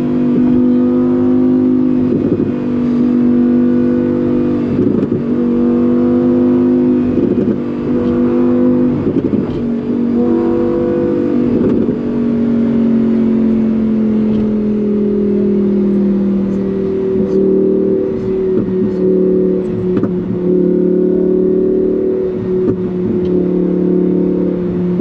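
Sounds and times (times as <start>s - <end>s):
sports car engine accelerating hard: 0.0s - 25.0s
quick gear changes: 13.0s - 20.4s.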